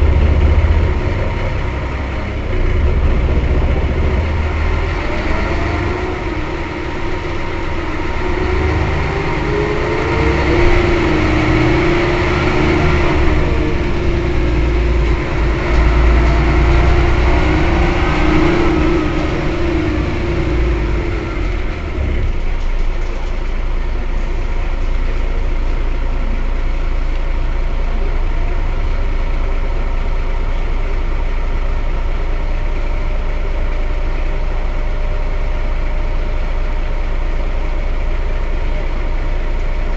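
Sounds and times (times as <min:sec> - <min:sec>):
bus diesel engine running: 0:00.0 - 0:39.9
drivetrain whine: 0:00.0 - 0:39.9.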